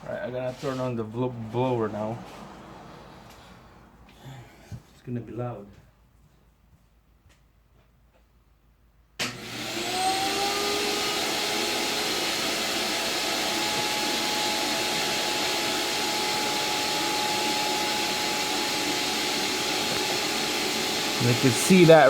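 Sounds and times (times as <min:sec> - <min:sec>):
shop vac motor whine: 0:09.2 - 0:22.0.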